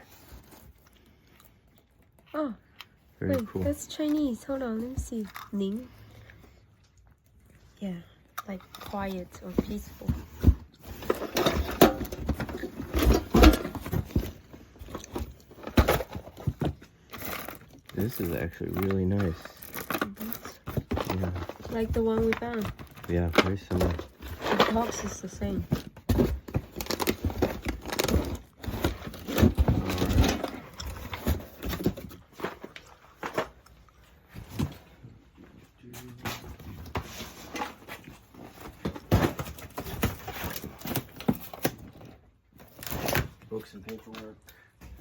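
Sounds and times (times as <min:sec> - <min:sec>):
box being handled: 0:08.7 - 0:33.6
objects knocking in boxes: 0:09.0 - 0:16.8.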